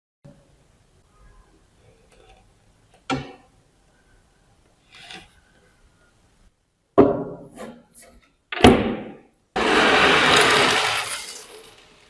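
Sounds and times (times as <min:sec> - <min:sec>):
rushing power tool noise: 0:09.6 - 0:11.4.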